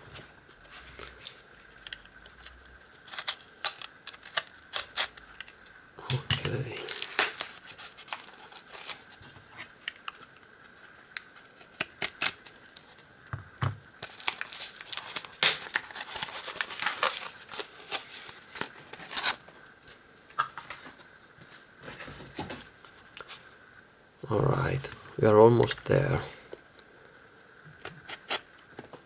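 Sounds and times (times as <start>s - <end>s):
packing material tearing and crinkling: 0.7s - 10.3s, 11.2s - 13.0s, 13.9s - 19.5s.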